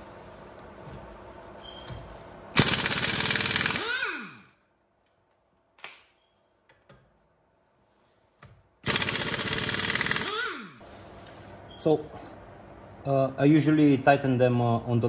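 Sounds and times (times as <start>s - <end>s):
impact wrench clicks: 2.6s - 4.5s, 8.8s - 10.8s
pneumatic impact wrench hammering: 2.6s - 4.6s, 8.8s - 10.8s.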